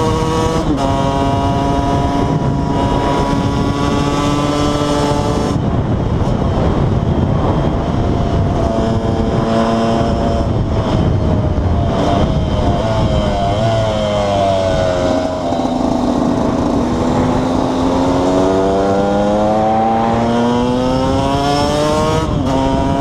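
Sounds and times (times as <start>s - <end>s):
two-stroke motorcycle engine: 0.0s - 20.2s.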